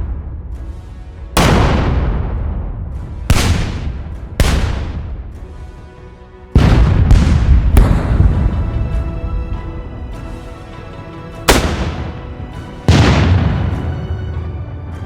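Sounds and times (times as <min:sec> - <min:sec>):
howitzer shots: 0:01.4 - 0:02.6, 0:03.3 - 0:05.4, 0:06.6 - 0:09.1, 0:11.4 - 0:13.9.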